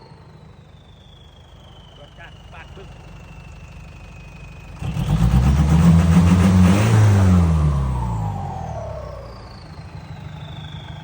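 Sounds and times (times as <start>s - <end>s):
truck engine revving: 4.6s - 10.9s.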